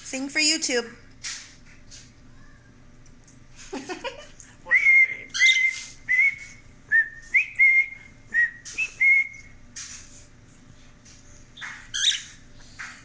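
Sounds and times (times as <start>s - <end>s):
cockatiel whistling: 4.7s - 9.5s, 11.6s - 12.4s
cockatiel chatter: 4.8s - 6.2s, 11.6s - 13.0s.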